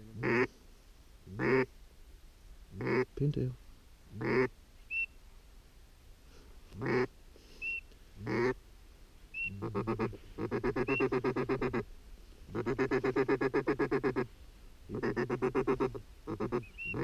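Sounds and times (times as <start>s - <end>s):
ducks quacking: 4.2s - 4.5s, 6.8s - 7.1s, 8.2s - 8.6s, 9.4s - 11.9s, 12.5s - 14.3s, 14.9s - 17.0s
ducks whistling: 4.9s - 5.2s, 7.5s - 8.5s, 9.3s - 11.8s, 15.0s - 17.0s.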